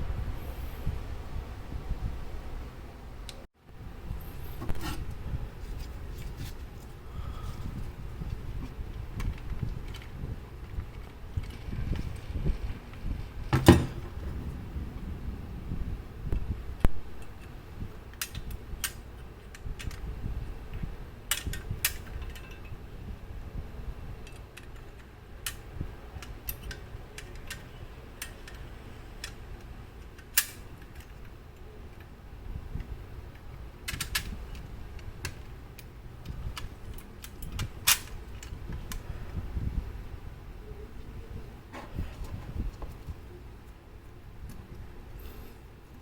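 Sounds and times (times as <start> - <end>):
steady low rumble: 0.0 - 21.9.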